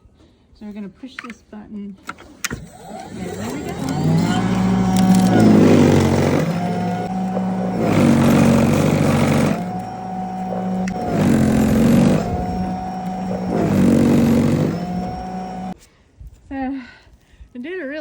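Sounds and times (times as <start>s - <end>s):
electric motor whine: 2.3s - 15.8s
auger churning snow: 2.6s - 15.8s.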